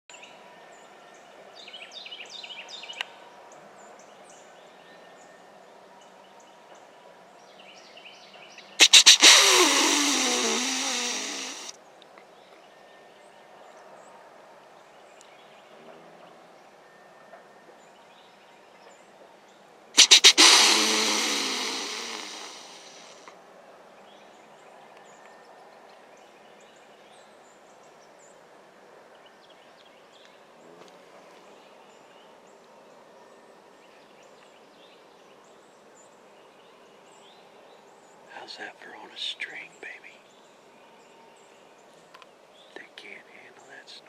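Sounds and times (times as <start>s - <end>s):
faint bird chirps: 8.6s - 11.7s, 42.6s - 44.0s
deer snort-wheeze call: 8.8s - 11.7s, 20.0s - 23.3s.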